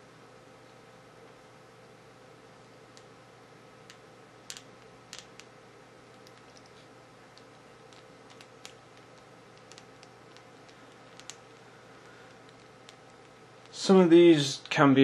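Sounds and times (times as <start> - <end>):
faint hum: 0.0 - 15.0
plastic parts clicking: 7.4 - 11.4.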